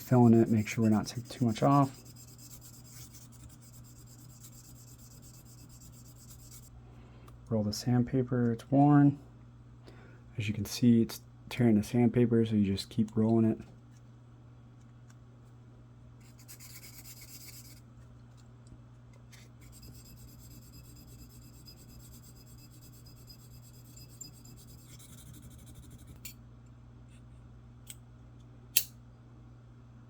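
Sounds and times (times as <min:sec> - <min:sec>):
sandpaper scratching on metal: 0:00.0 - 0:06.7, 0:16.3 - 0:17.8.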